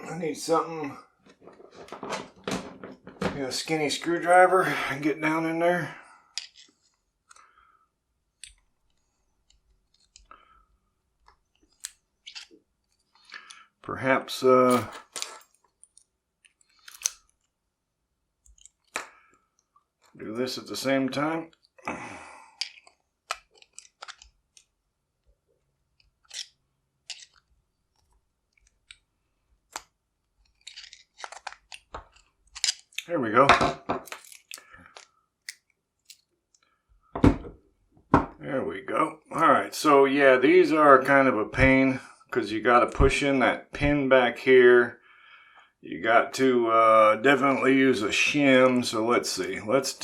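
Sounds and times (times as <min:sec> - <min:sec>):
faint metallic clicks and scrapes: 0:06.3 - 0:07.6, 0:08.4 - 0:13.7, 0:14.6 - 0:17.5, 0:22.6 - 0:25.3, 0:25.9 - 0:29.1, 0:29.7 - 0:33.1.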